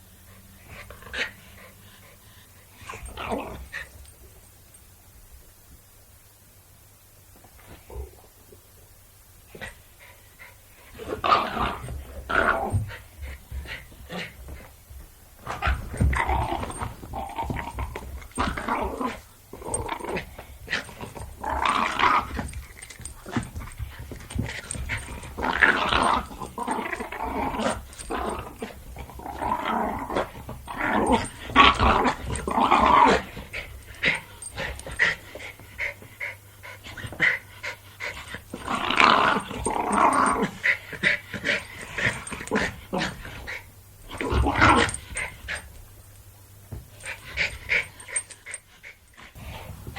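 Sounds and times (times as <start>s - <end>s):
dog growling: 2.8s - 3.9s, 11.0s - 13.0s, 15.5s - 35.2s, 38.1s - 45.6s.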